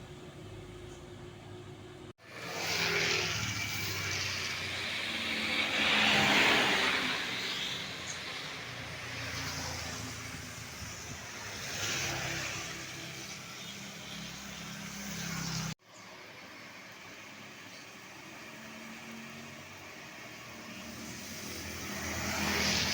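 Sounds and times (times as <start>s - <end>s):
vehicles passing close by: 0.0s - 22.9s.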